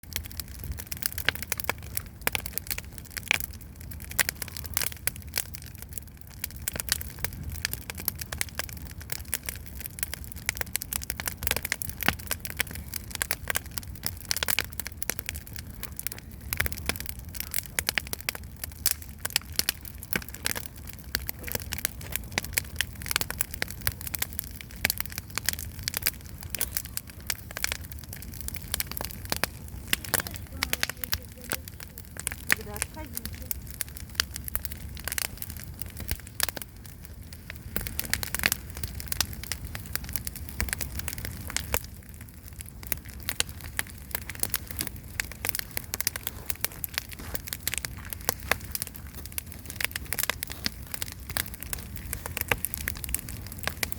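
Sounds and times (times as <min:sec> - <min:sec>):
campfire crackling: 0:00.0 - 0:53.9.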